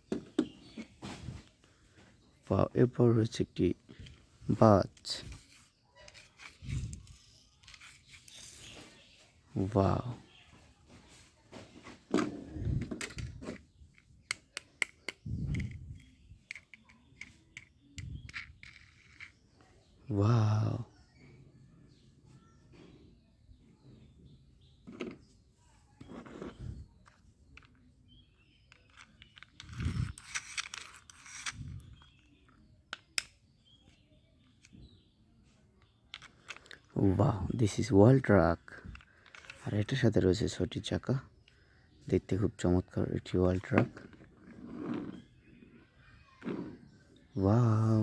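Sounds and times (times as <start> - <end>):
plastic toy clicks and knocks: 12.8 - 19.4, 28.5 - 34.0, 38.8 - 39.7.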